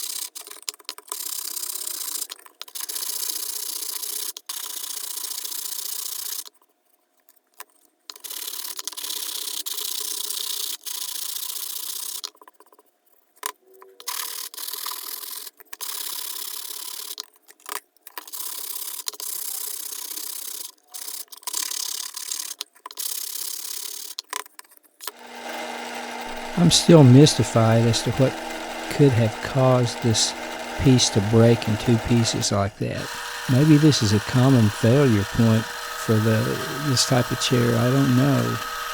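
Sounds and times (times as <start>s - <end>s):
wood being sanded: 25.2s - 38.9s.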